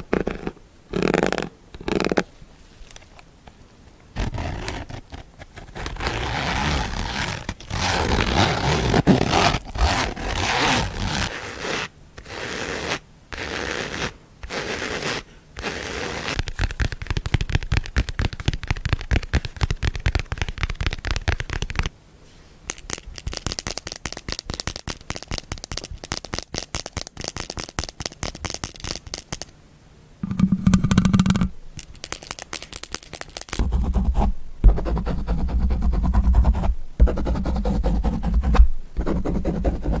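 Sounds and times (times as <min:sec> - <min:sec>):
scraping and scratching on objects: 0:30.2 - 0:40.0.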